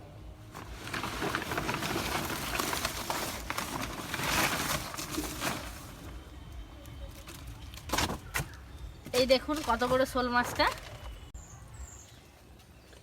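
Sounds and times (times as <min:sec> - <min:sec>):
mesh crackling and rustling: 0:00.4 - 0:08.4.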